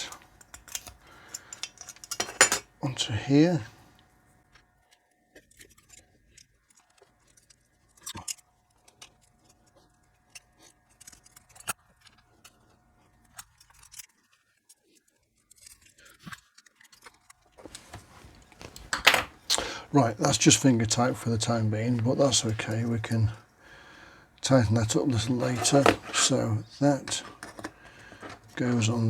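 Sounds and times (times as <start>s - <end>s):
small clicks and clinks: 0.4s - 2.7s, 27.1s - 28.6s.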